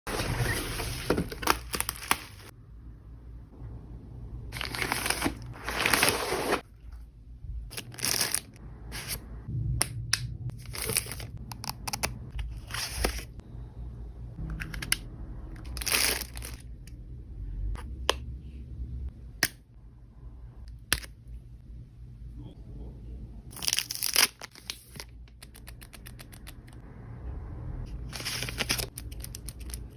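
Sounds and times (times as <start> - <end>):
packaging torn open and crinkled: 1.2 - 2.5, 7.7 - 9.1, 10.6 - 13.3, 15.6 - 16.7, 23.5 - 26.6, 28.1 - 29.9.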